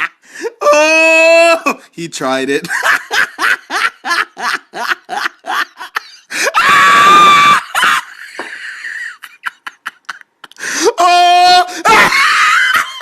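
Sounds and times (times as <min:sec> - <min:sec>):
person laughing hysterically: 0:00.0 - 0:01.8, 0:02.6 - 0:13.0
breathy gasp: 0:10.6 - 0:10.9.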